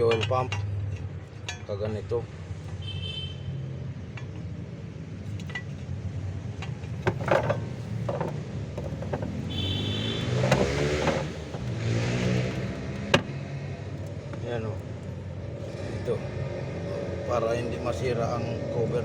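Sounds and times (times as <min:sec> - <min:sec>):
vehicle passing by: 0:09.3 - 0:19.0.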